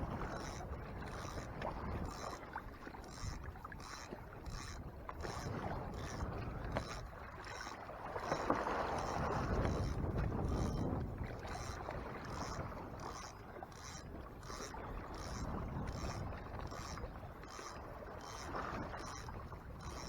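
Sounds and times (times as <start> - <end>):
water noise around kayak: 0.0 - 20.0
wind noise: 8.5 - 13.2, 14.0 - 20.0.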